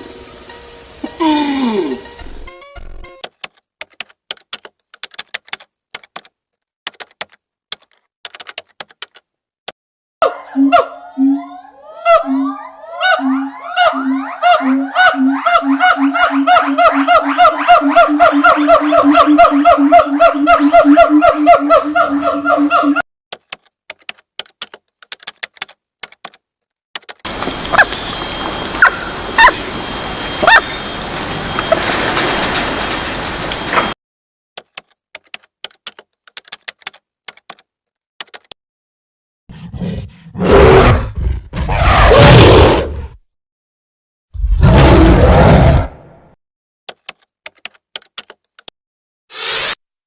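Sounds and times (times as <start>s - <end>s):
monkey calling: 10.2s - 23.0s, 28.8s - 29.6s
sharp clicks and taps: 46.9s - 48.7s.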